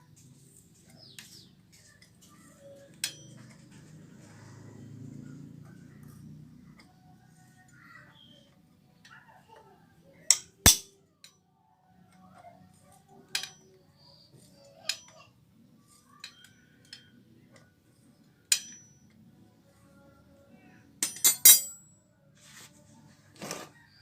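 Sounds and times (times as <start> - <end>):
metallic clinks of tools and parts: 2.0 - 3.9, 15.9 - 17.2, 18.5 - 19.2, 21.0 - 21.9.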